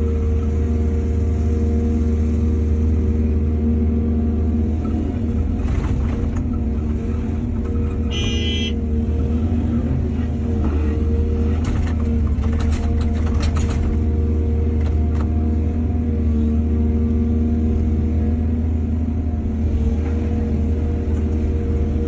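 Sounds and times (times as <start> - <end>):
diesel engine rumbling: 0.0 - 22.0
knocks and clatter: 11.5 - 14.1.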